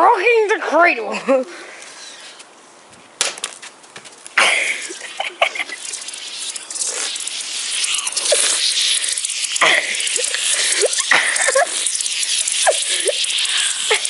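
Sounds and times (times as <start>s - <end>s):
soda can spraying and fizzing: 3.4s - 14.0s
short squeaky chirps: 5.6s - 14.0s.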